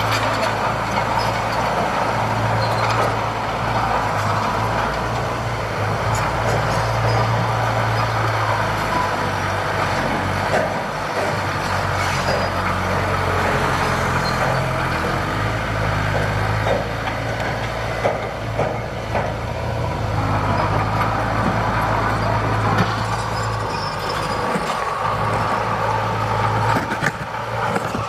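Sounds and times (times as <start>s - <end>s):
heavy diesel engine running: 0.0s - 28.0s
knocks and clatters: 16.1s - 19.5s, 20.4s - 28.0s.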